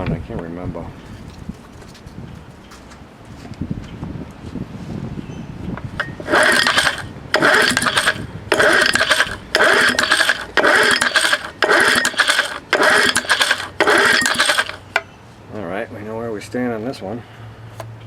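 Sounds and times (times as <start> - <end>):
chainsaw recoil starter pulls: 6.0 - 15.0.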